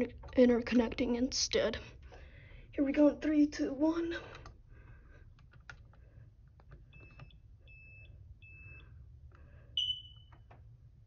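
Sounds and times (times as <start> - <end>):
smoke alarm chirp: 6.9 - 9.0, 9.8 - 10.4
faint smoke alarm beeps: 6.9 - 9.1, 9.8 - 10.4.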